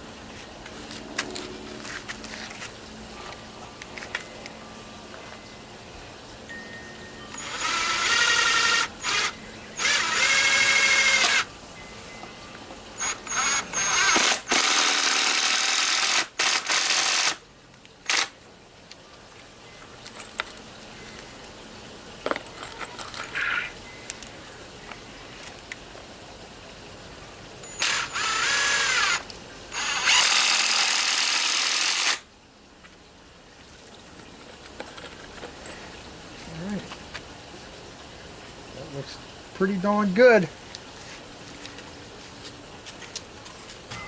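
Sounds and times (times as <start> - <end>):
power drill driving screws: 7.4 - 11.5, 13.0 - 17.4, 18.1 - 18.3, 27.8 - 32.2.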